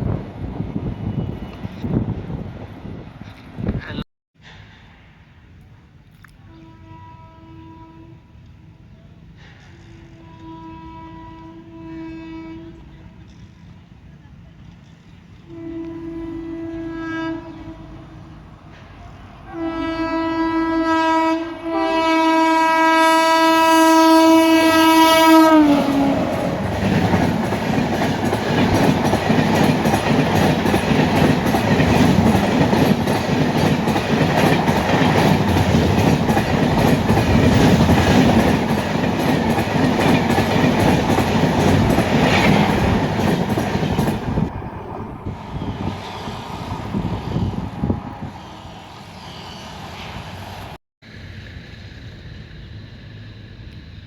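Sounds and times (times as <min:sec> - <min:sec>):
train rumble and wheel clatter: 0:00.0 - 0:54.0
locomotive horn: 0:06.4 - 0:08.4, 0:09.7 - 0:13.2, 0:15.5 - 0:18.4, 0:19.0 - 0:27.0.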